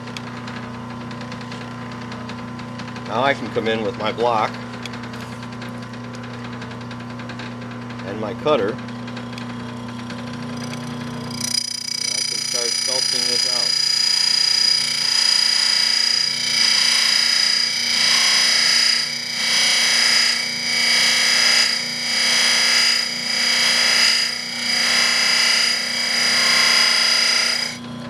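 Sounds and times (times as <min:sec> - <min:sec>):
buffer motor whine: 0:08.2 - 0:28.0
cutter scraping grinding wheel: 0:10.6 - 0:27.8.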